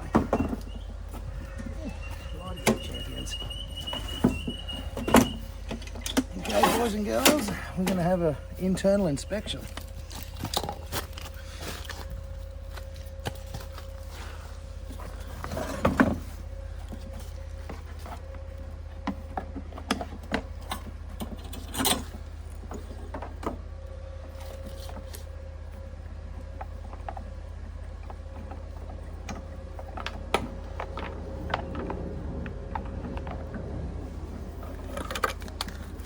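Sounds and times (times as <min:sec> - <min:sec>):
equipment clicks and clunks: 0:00.0 - 0:08.2
low machine hum: 0:00.0 - 0:36.0.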